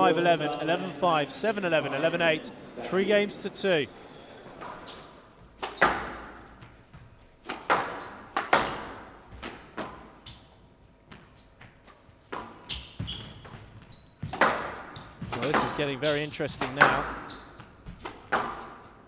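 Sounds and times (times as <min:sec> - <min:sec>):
squash ball strikes echoing: 0:04.6 - 0:10.5, 0:11.1 - 0:19.0
shoe squeaks: 0:04.6 - 0:19.0.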